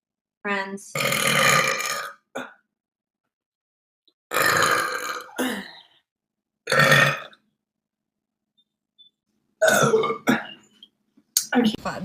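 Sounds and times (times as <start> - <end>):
woman burping: 0.9 - 2.7, 4.3 - 5.9, 6.6 - 7.4, 9.6 - 10.7.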